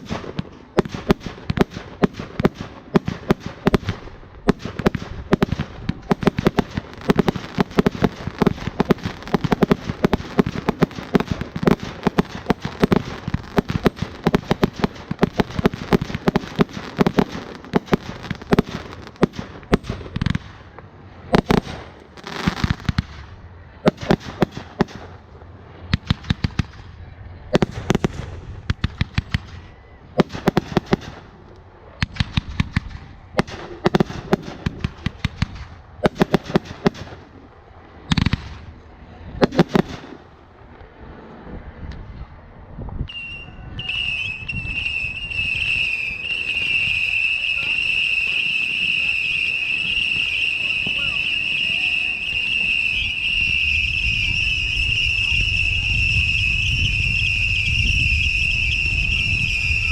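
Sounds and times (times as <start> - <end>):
fireworks hiss: 0.0 - 20.7, 43.9 - 59.9
fireworks crackling: 0.0 - 59.9.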